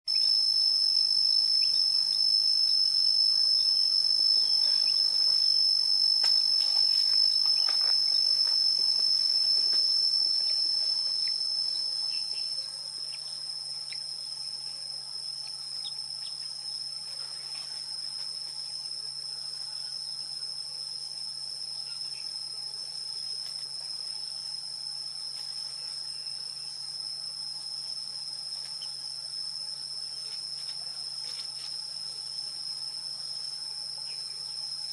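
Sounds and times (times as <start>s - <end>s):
crickets trilling: 0.1s - 34.9s.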